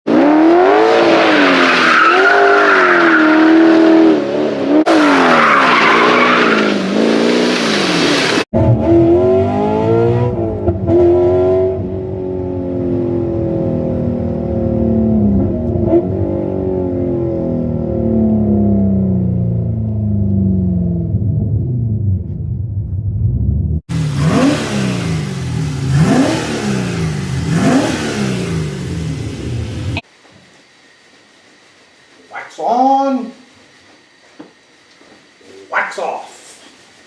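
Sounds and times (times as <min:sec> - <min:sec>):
car engine revving: 0:00.1 - 0:30.0
tires squealing: 0:00.7 - 0:04.2, 0:04.8 - 0:08.4.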